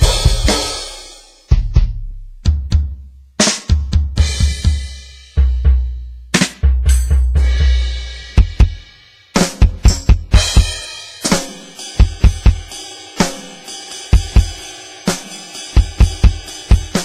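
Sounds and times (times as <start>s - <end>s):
cymbal crashes: 0.0s - 1.5s, 10.4s - 17.0s
electronic drum kit playing: 0.0s - 17.0s.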